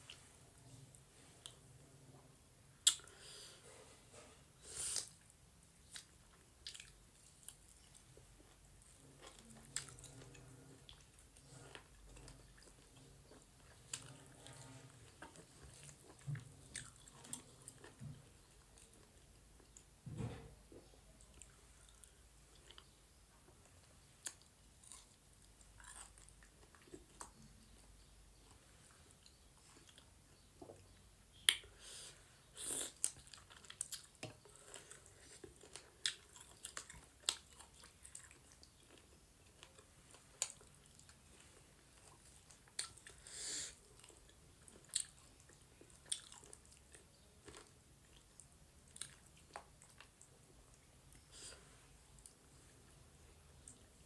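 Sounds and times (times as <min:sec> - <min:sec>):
person chewing with mouth clicks: 0:02.8 - 0:03.2, 0:04.9 - 0:19.0, 0:32.5 - 0:52.5.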